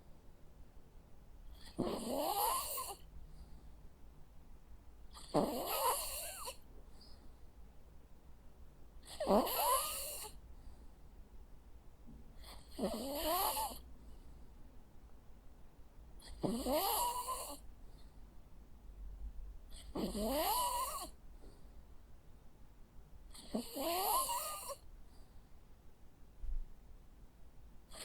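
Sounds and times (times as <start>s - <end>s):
dog snoring: 1.5s - 3.0s, 5.1s - 6.6s, 9.0s - 10.4s, 12.4s - 13.8s, 16.2s - 17.6s, 19.7s - 21.2s, 23.3s - 24.8s.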